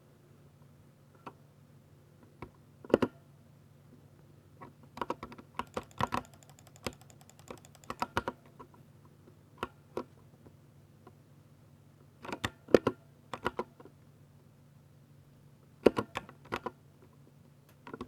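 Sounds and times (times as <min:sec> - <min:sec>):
mechanical keyboard keystrokes: 0:05.6 - 0:08.3.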